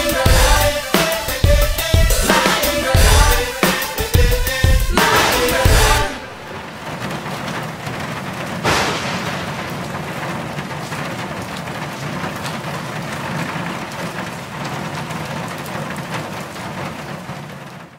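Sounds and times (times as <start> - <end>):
crowd cheering: 0.0 - 6.9.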